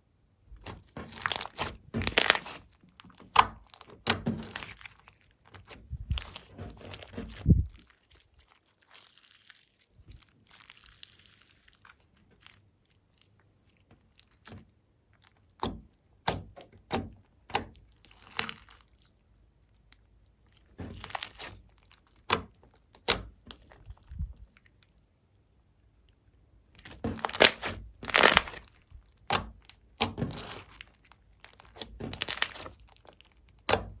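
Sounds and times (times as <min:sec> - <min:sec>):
slime sticky clicks and crackles: 0:00.6 - 0:19.1, 0:19.7 - 0:24.9, 0:26.8 - 0:34.0.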